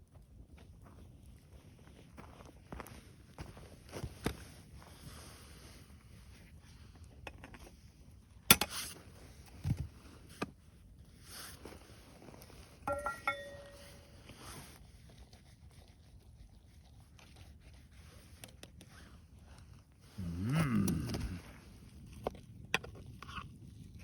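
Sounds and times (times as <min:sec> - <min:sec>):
short ringing clink: 0:12.9 - 0:14.2.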